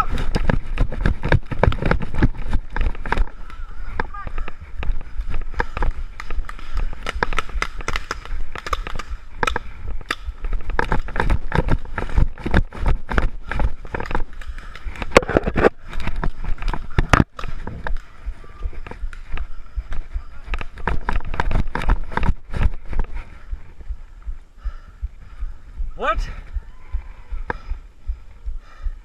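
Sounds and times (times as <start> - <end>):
low rumble of wind: 0.0 - 29.0
camera handling noise: 4.8 - 18.2
paintball markers firing: 5.6 - 11.3.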